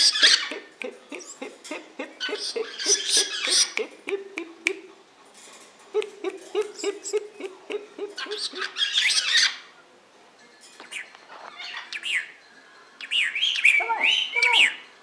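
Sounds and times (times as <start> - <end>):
pet birds calling: 0.0 - 4.9, 6.0 - 9.6, 13.0 - 14.8.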